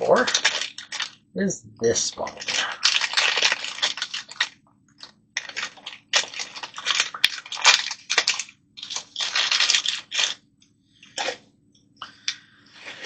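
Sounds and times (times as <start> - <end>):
plastic packaging crinkling: 0.0 - 1.2, 2.2 - 10.4, 11.0 - 11.4.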